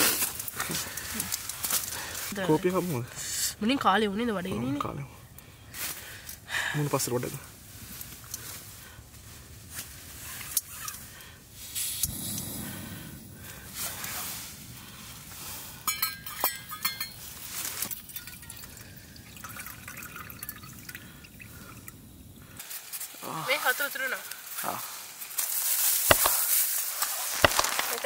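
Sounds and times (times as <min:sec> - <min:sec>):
liquid pouring and dripping: 0:17.2 - 0:22.0.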